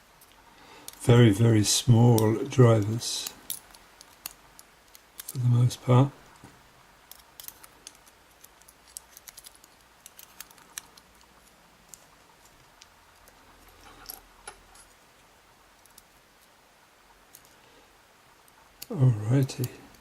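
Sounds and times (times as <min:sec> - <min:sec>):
small metallic clicks: 0:02.1 - 0:05.5, 0:07.0 - 0:15.0, 0:18.4 - 0:20.0.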